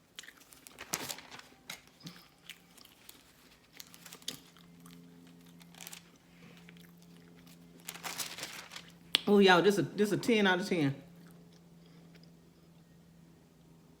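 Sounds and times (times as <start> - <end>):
person chewing and crunching food: 0.0 - 9.3, 11.2 - 12.9
faint steady hum: 0.0 - 14.0.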